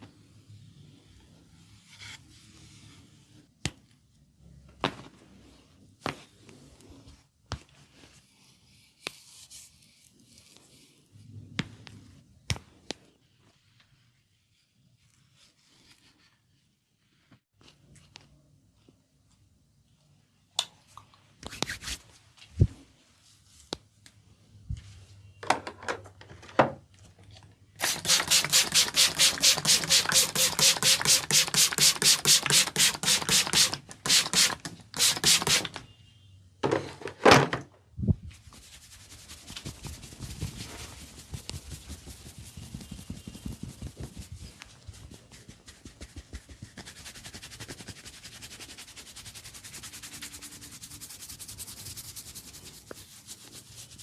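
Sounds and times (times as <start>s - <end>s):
hands patting and rubbing skin: 27.8s - 35.7s, 38.6s - 48.0s.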